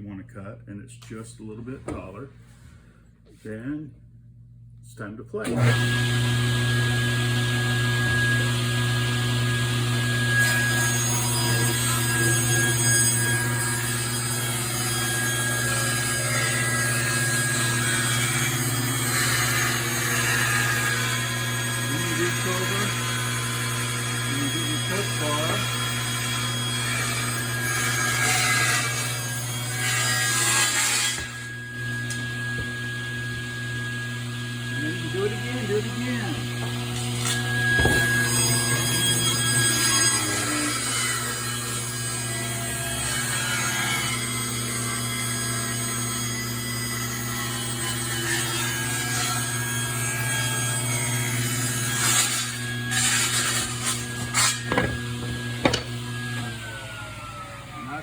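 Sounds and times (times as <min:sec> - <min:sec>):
table saw ripping wood: 0:05.4 - 0:56.8
table saw motor spinning free: 0:51.6 - 0:57.7.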